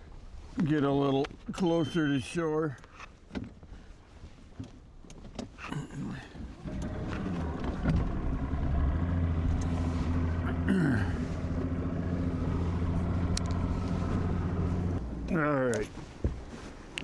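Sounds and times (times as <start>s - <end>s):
outboard motor idling: 6.6s - 15.5s.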